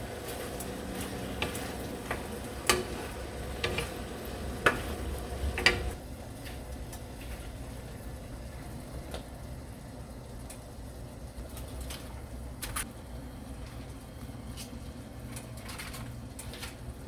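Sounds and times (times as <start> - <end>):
utensil knocking against pan: 1.4 - 6.0.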